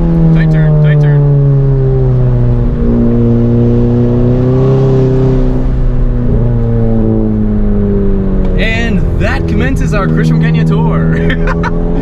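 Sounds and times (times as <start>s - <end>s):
car engine cruising: 0.0s - 12.0s.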